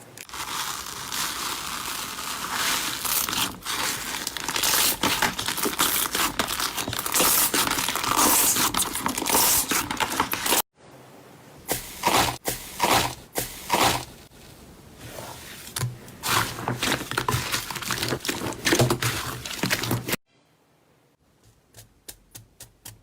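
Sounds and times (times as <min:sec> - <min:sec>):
slime crinkling and crackling: 0:00.2 - 0:10.6, 0:16.2 - 0:20.2.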